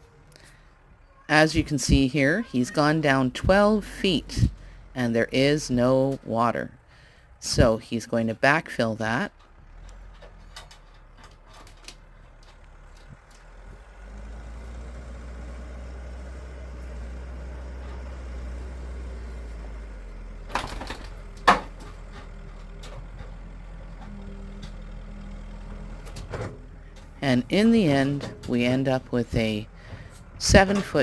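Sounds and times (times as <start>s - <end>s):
diesel engine running: 0.0s - 31.0s.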